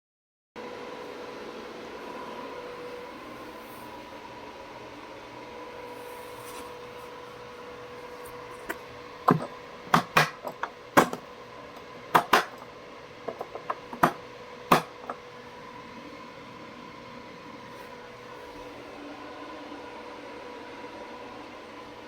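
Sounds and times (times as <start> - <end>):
faint steady hum: 0.6 - 22.0
hard objects clicking and knocking: 8.6 - 12.6, 13.3 - 15.2.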